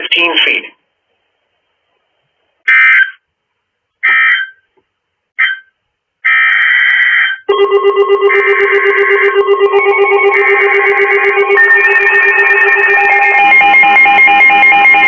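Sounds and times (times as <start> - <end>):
pulsing electronic tune: 7.5 - 15.0.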